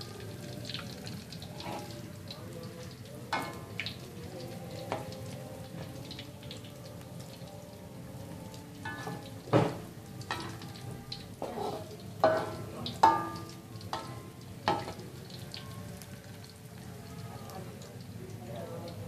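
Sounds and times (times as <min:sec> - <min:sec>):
food frying in hot oil: 0:00.0 - 0:19.0
metal utensil knocking on pan: 0:03.3 - 0:03.8, 0:08.9 - 0:10.6, 0:11.5 - 0:15.0.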